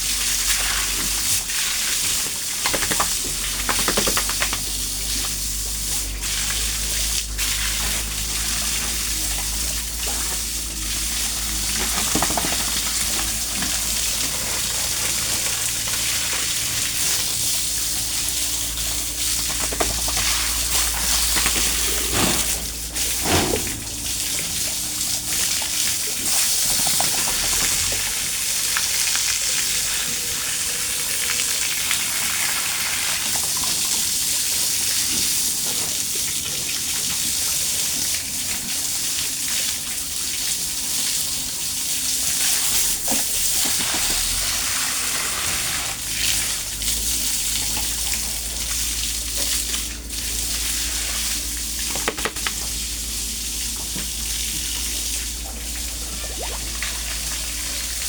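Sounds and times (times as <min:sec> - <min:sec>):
water hissing: 0:00.0 - 0:31.9
low steady hum: 0:03.2 - 0:32.0.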